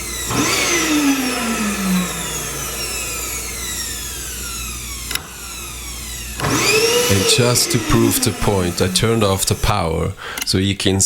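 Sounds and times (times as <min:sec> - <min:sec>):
vacuum cleaner motor running: 0:00.0 - 0:11.0.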